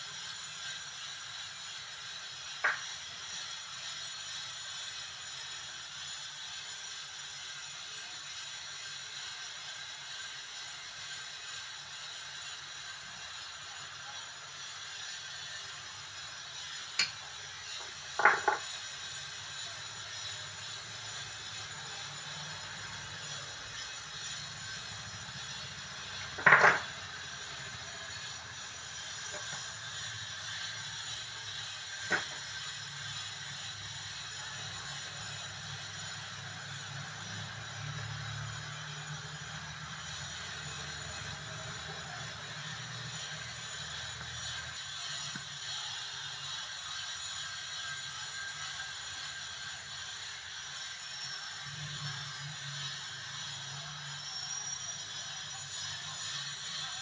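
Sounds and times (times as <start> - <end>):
tools and parts clicking and knocking: 2.6 - 2.9, 17.0 - 19.0, 26.0 - 30.0, 31.6 - 32.8.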